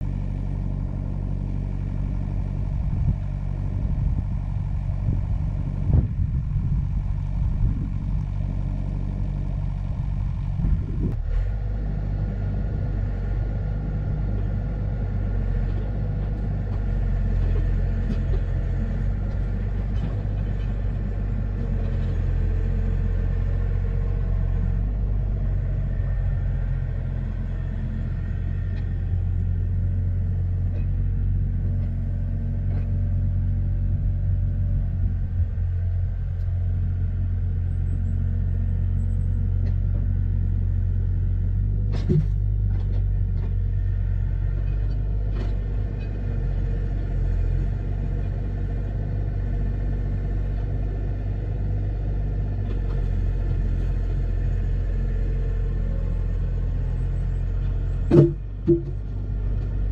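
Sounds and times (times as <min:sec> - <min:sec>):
engine running steadily: 0:00.0 - 0:59.9
knocks: 0:58.1 - 0:59.0.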